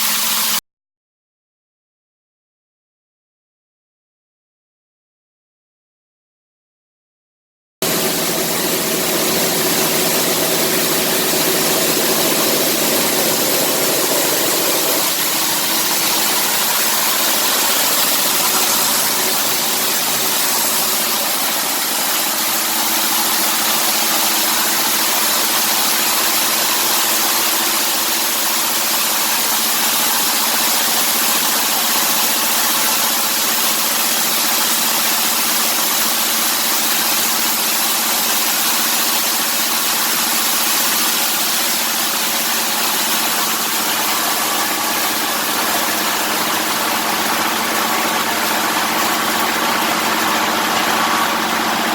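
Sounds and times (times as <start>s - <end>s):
coffee huller machine humming: 7.8s - 34.3s, 39.5s - 51.9s.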